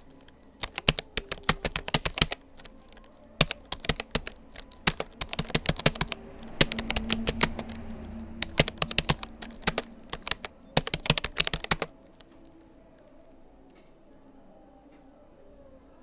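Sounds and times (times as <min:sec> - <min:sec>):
keyboard key clicks: 0:00.6 - 0:07.7, 0:08.4 - 0:11.9.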